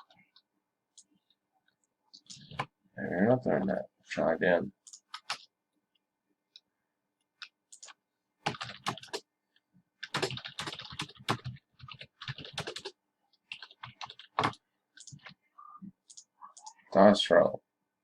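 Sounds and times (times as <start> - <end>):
computer keyboard typing: 4.8 - 5.5, 7.4 - 9.3, 10.0 - 15.4, 16.0 - 16.8.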